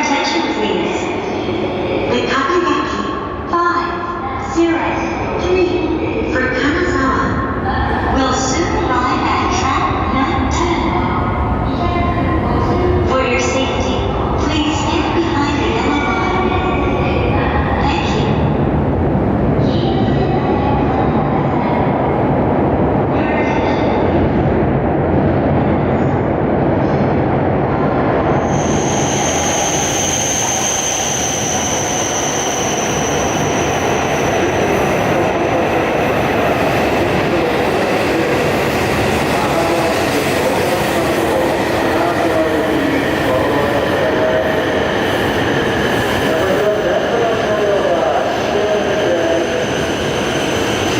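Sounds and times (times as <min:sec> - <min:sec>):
train rumbling: 0:00.0 - 0:50.9.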